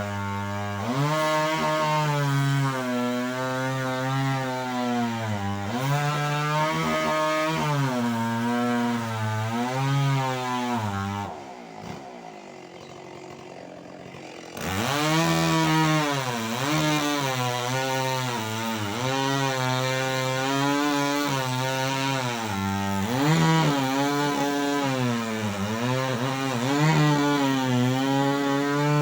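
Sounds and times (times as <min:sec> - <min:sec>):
chainsaw cutting wood: 0:00.0 - 0:29.0.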